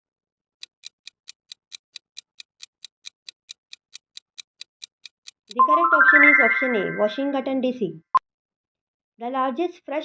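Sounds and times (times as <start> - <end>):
countdown timer ticking: 5.5 - 7.6.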